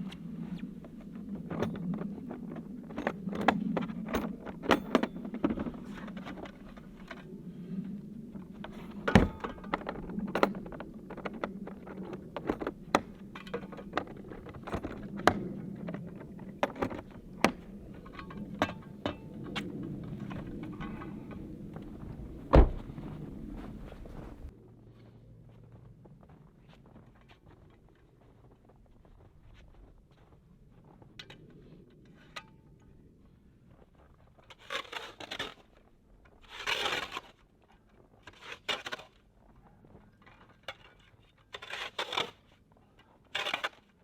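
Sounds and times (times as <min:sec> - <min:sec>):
steady low hum: 0:00.0 - 0:26.5.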